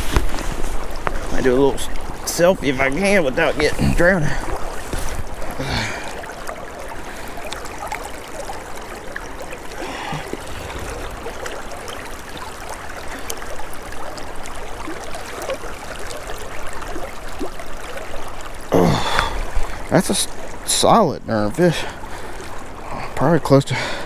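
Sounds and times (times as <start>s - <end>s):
small splashes: 0.0s - 20.7s
river water flowing: 0.0s - 24.0s.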